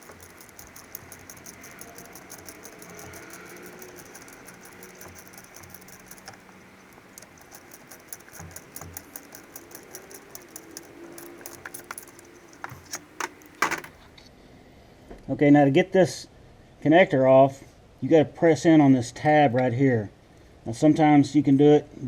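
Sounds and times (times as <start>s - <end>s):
ratchet wrench clicking: 0.0s - 14.0s
tools clanking against metal: 0.0s - 14.0s.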